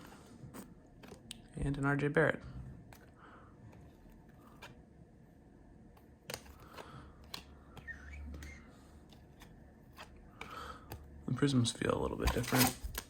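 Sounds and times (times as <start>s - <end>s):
cards being flipped by hand: 0.6s - 1.4s, 2.9s - 4.8s, 5.9s - 11.1s, 12.1s - 13.0s.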